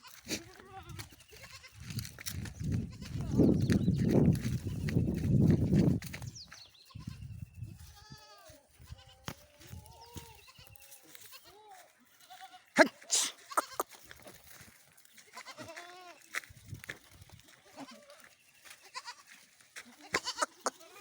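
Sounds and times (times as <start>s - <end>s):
goats bleating: 0.0s - 1.9s, 2.8s - 3.5s, 7.8s - 14.0s, 15.2s - 16.3s, 17.5s - 21.0s.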